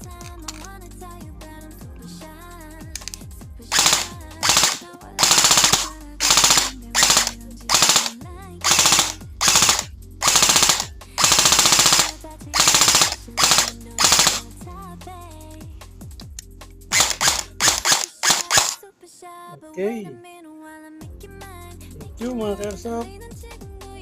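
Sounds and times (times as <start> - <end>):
airsoft rifle full-auto bursts: 3.7 - 14.5, 16.9 - 18.8.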